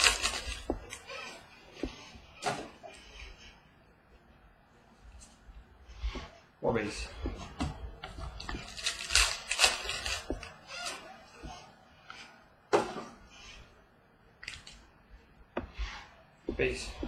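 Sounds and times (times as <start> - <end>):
foil packs rustling and tearing: 0.0 - 1.0, 8.6 - 11.0
cards being handled and slid: 0.0 - 3.0.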